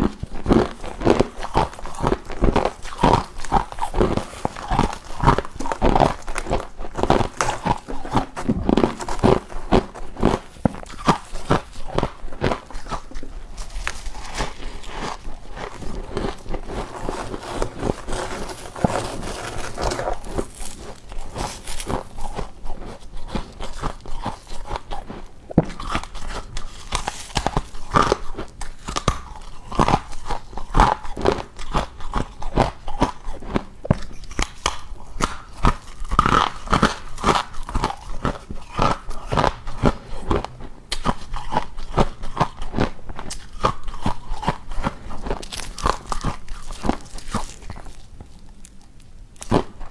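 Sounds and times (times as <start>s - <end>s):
person crunching ice: 0.0s - 49.9s.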